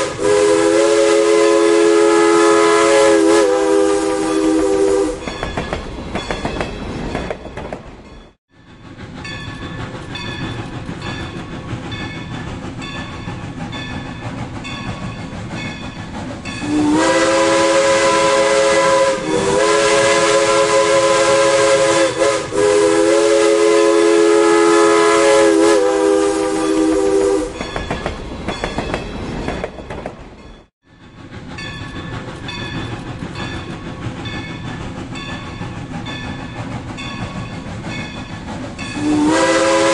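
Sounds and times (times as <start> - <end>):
locomotive chime whistle: 0.0 - 6.5, 15.6 - 28.8, 38.8 - 39.9
train wheels clattering on rails: 5.2 - 22.4, 26.6 - 39.9.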